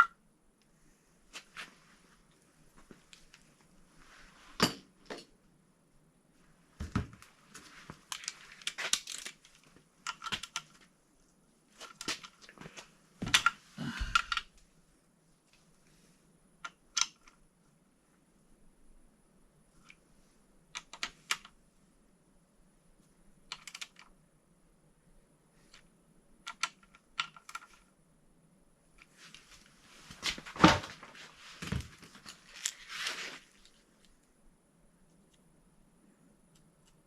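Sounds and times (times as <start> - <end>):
metal parts and tools clicking: 8.1 - 10.7.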